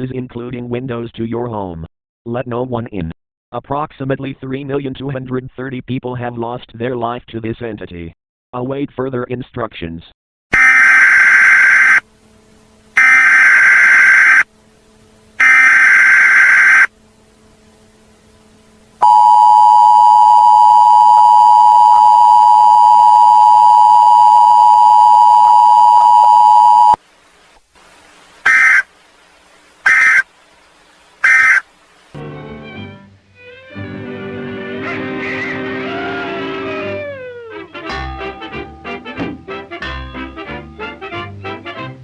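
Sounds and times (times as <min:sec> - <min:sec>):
two-tone attention signal: 0:10.6 - 0:12.0, 0:13.0 - 0:14.4, 0:15.4 - 0:16.9, 0:19.0 - 0:27.0
warbling digital data bursts: 0:10.6 - 0:12.0, 0:13.0 - 0:14.4, 0:15.4 - 0:16.9.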